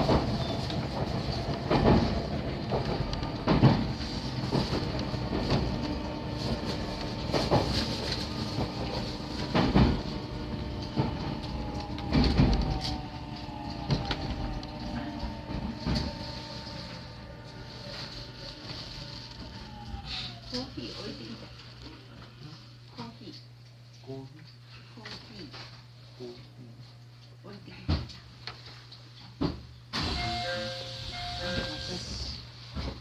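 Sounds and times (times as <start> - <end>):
train wheels clacking over rail joints: 0.0 - 12.8
train rumble: 0.0 - 21.7, 30.0 - 33.0.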